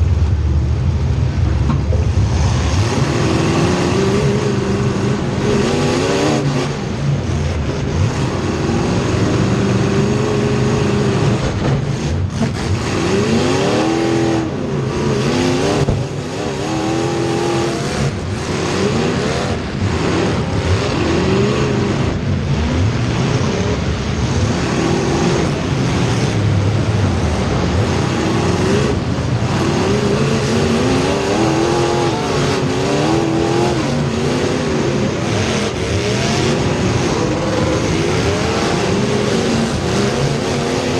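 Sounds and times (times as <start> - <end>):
race car engines revving: 0.0 - 40.9.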